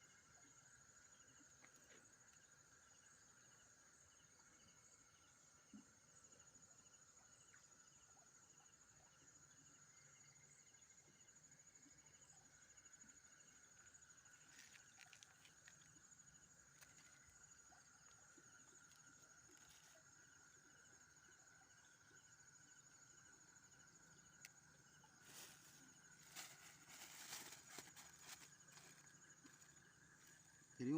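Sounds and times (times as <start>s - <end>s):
night insects trilling: 0.0s - 30.9s
rustle: 25.0s - 30.5s.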